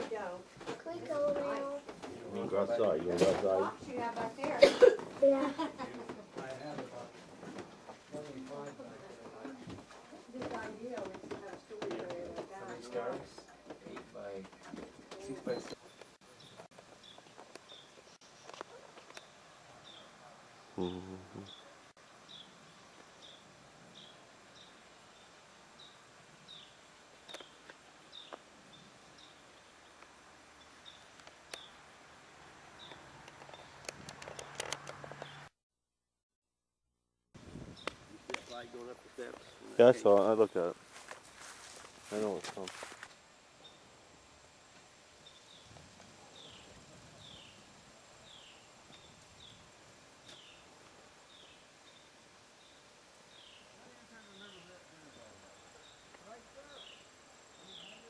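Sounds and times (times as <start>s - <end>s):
small bird chirping: 20.8s - 21.7s, 22.3s - 31.8s
sharp clicks: 32.9s - 35.4s.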